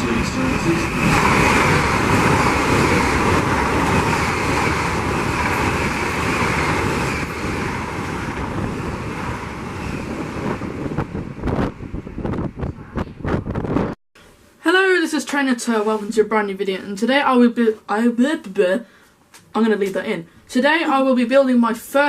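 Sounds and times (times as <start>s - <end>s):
wind on microphone: 0.0s - 14.0s.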